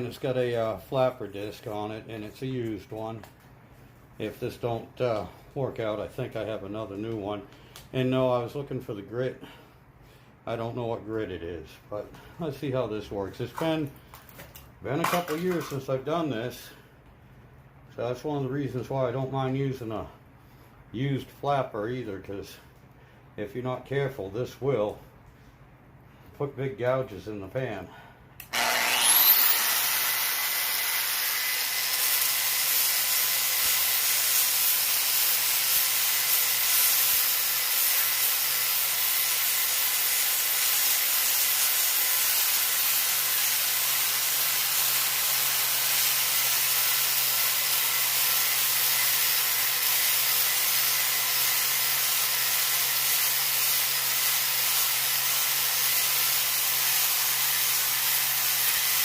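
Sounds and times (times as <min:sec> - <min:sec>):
grinder motor hum: 0:28.5 - 0:34.5
angle grinder sanding metal: 0:28.6 - 0:59.0.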